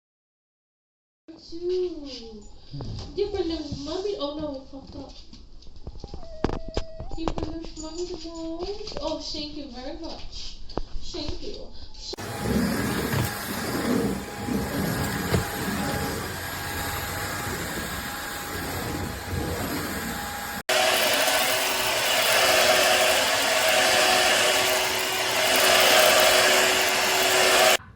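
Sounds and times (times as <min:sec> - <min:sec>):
vacuum cleaner motor whine: 0:12.2 - 0:27.8.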